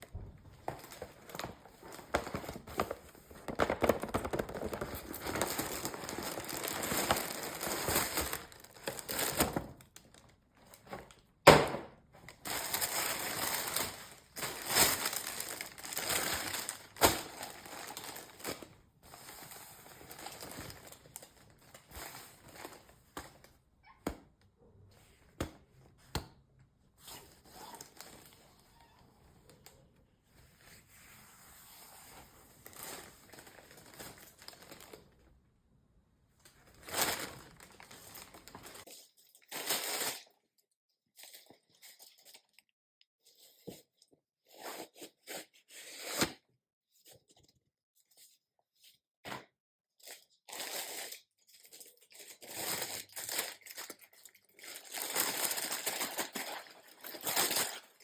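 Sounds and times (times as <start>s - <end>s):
packaging crinkling and rustling: 0.4s - 11.3s, 12.2s - 23.5s, 27.1s - 28.9s, 32.0s - 35.2s, 36.4s - 40.4s, 50.1s - 58.0s.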